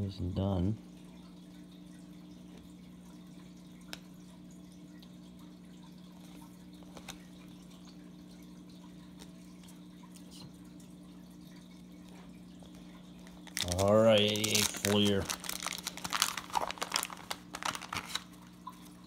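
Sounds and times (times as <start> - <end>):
low electrical hum: 0.0 - 19.0
cards flipping clicks: 16.0 - 18.3.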